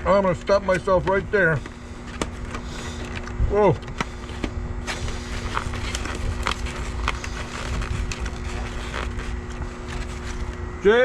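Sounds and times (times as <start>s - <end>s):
machine hum: 0.0s - 11.0s.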